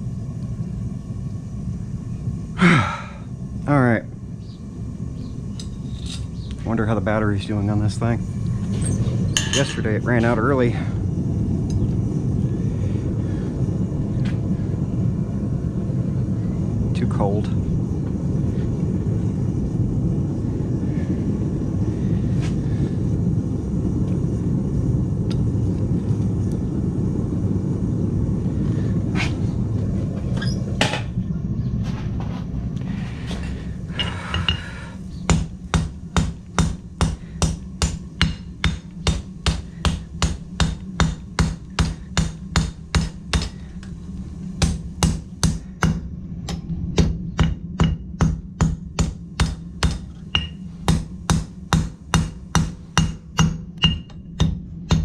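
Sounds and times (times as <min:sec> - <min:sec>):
low rumble: 0:00.0 - 0:55.0
hammer striking steel on anvil: 0:09.4 - 0:09.9, 0:35.3 - 0:43.6, 0:44.6 - 0:55.0.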